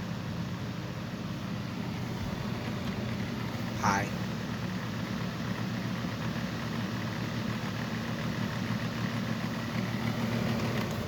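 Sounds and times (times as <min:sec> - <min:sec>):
box fan motor hum: 0:00.0 - 0:11.0
fan rattling: 0:09.6 - 0:11.0.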